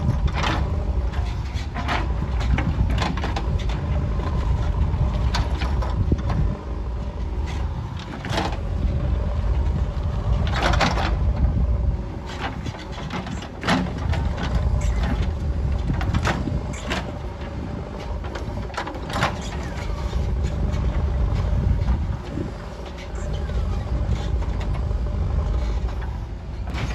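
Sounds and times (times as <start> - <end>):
diesel engine running: 0.0 - 26.9.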